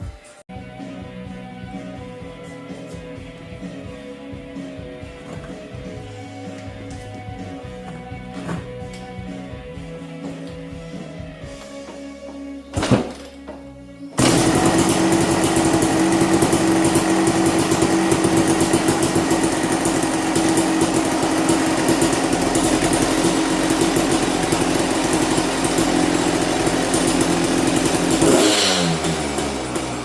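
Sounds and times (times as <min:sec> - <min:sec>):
two-stroke motorcycle engine running: 0:14.2 - 0:30.0.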